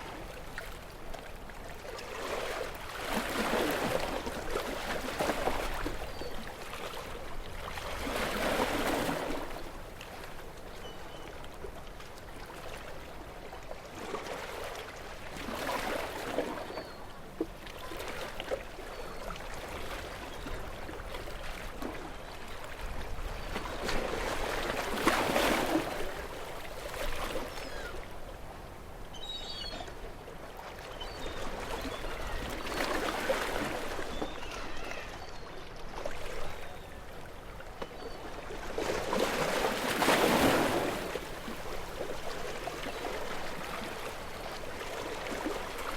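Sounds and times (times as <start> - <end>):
gentle waves washing onto beach: 0.0 - 10.4.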